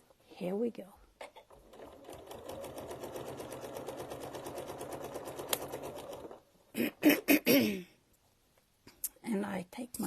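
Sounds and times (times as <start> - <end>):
sewing machine stitching: 1.4 - 6.5.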